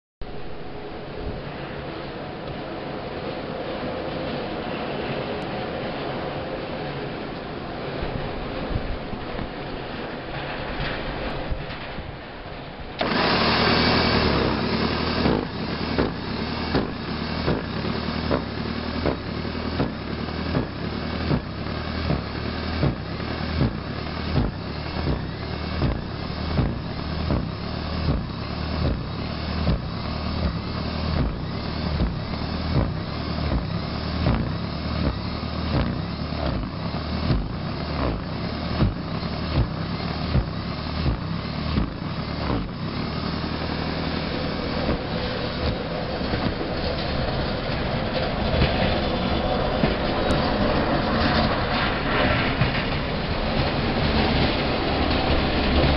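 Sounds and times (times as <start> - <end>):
rotor churning through snow: 13.0 - 55.9
snow shovel electric motor: 13.0 - 55.9.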